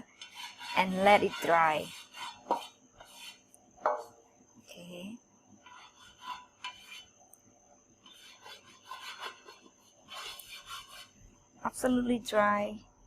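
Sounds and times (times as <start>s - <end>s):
scraping on cookware: 0.0s - 4.1s, 5.6s - 7.1s, 8.1s - 11.2s.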